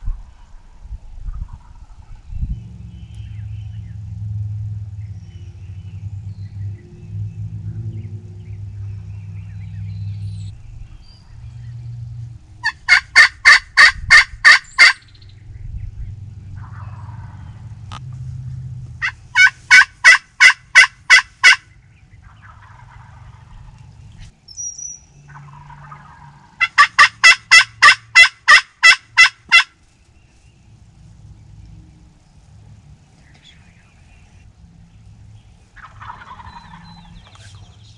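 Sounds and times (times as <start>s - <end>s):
low steady rumble: 0.0s - 37.9s
turkey yelping: 12.6s - 15.1s, 16.6s - 17.4s, 19.0s - 23.8s, 25.3s - 29.7s, 35.8s - 37.5s.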